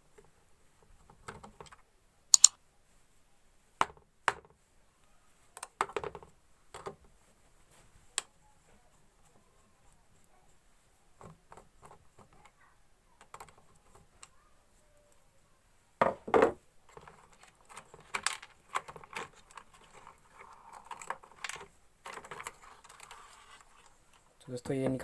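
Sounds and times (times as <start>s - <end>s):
loud knocks: 16.0s - 16.6s.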